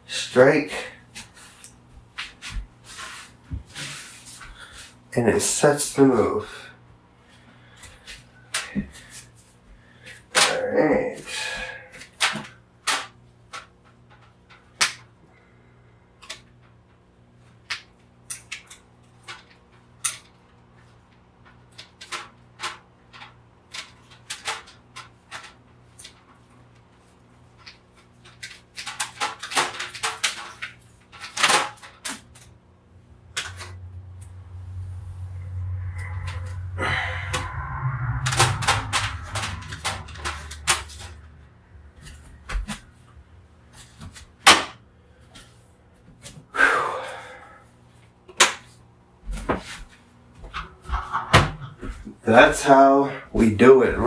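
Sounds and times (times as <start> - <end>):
steady low hum: 32.3 - 45.9.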